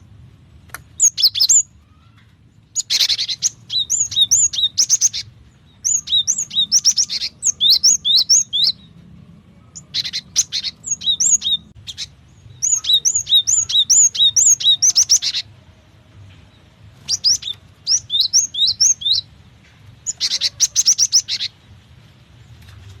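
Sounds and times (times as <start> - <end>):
bird calling high upswept notes: 1.0 - 8.9, 9.7 - 15.6, 17.0 - 19.4, 20.0 - 21.7.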